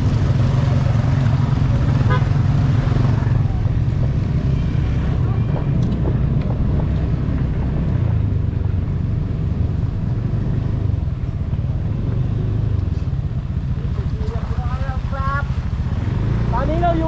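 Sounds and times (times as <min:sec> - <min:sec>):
motorcycle engine running: 0:00.0 - 0:17.0
wind buffeting microphone: 0:02.7 - 0:11.8.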